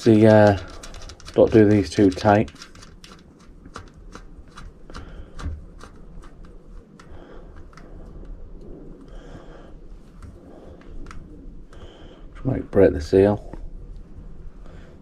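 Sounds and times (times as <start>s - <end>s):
small clicks and rustling: 0.0s - 9.2s, 10.0s - 11.8s.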